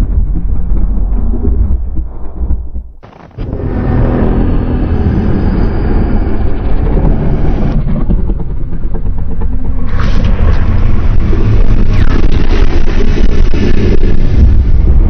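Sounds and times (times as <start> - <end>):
low rumbling monster growl: 3.3 - 15.0.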